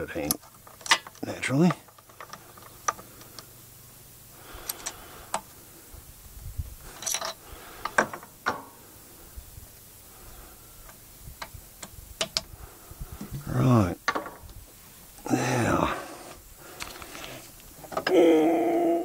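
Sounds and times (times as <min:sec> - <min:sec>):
sharp metallic clicks and knocks: 0:00.1 - 0:03.5, 0:07.0 - 0:08.8, 0:10.9 - 0:12.5.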